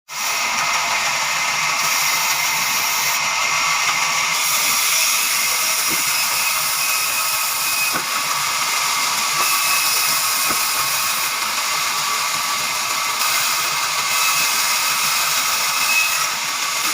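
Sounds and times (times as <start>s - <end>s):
saw cutting log: 0.1s - 16.9s.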